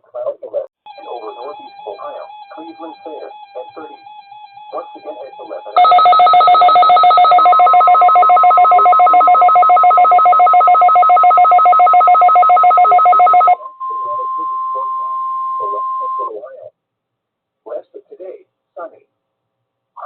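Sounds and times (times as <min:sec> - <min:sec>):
steady warning alarm tone: 0:00.8 - 0:16.4
pulsing two-pitch electronic alarm: 0:00.9 - 0:16.3.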